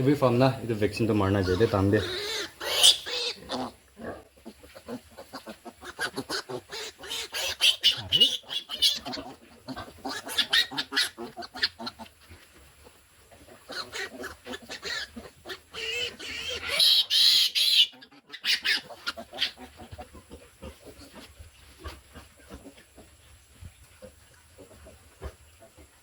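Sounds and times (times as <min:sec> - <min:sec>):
piglets squealing: 0:01.3 - 0:03.8, 0:04.4 - 0:12.1, 0:13.5 - 0:21.1.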